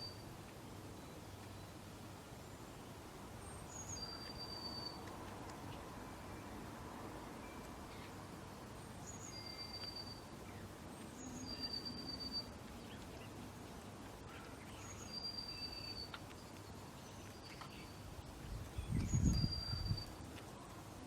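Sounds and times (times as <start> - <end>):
faint outdoor hiss: 0.0 - 21.0
songbirds high whistles: 11.2 - 12.6, 14.8 - 16.2, 18.9 - 20.2.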